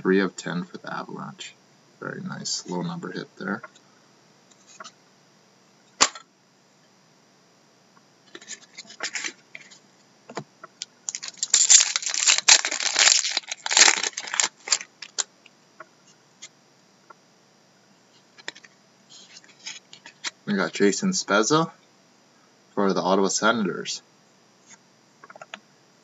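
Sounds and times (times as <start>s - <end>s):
wrapper crinkling as torn open: 11.1s - 15.2s.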